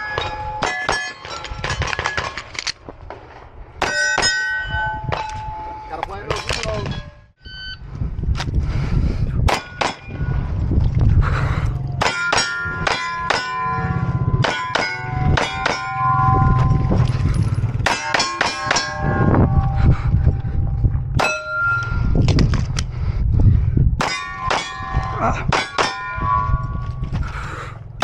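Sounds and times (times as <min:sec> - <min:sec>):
steel plates ringing when hit: 0:00.0 - 0:01.8, 0:03.8 - 0:07.3, 0:12.0 - 0:17.1, 0:17.7 - 0:19.8, 0:21.0 - 0:22.0, 0:24.0 - 0:27.0
pistol shots: 0:09.5 - 0:10.1.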